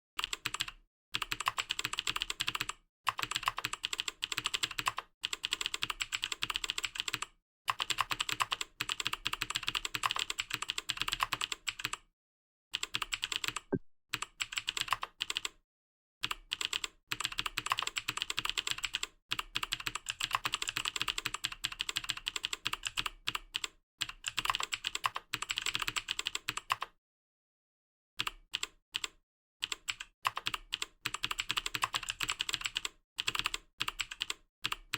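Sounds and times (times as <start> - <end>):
fast typing on keyboard: 0.2 - 12.0, 12.7 - 15.6, 16.2 - 26.9, 28.2 - 34.9.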